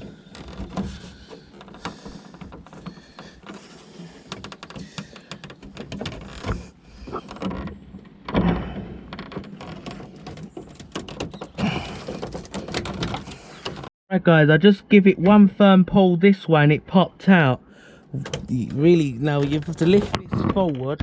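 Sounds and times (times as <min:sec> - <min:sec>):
plastic trim clicking and creaking: 0:00.0 - 0:13.9, 0:18.2 - 0:21.0.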